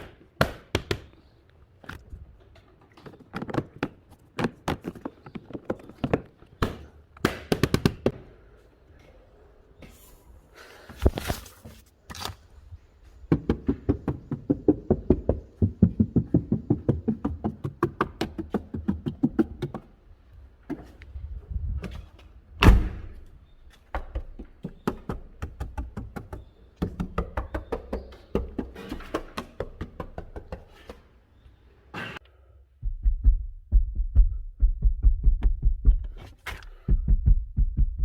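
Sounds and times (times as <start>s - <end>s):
heavy thump on trunk: 22.6s - 23.2s.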